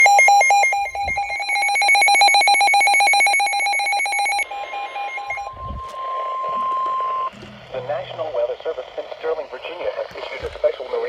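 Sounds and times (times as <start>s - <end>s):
fast-trilling electronic beep: 0.0s - 7.4s
steady single-pitch alert tone: 0.0s - 8.1s.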